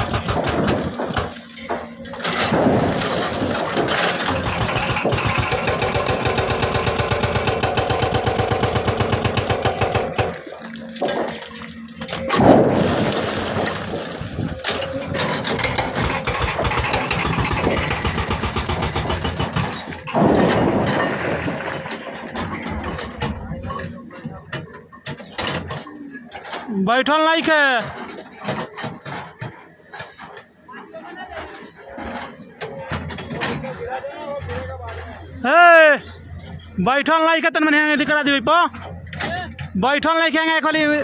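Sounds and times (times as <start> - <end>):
engine running: 0.0 - 24.0.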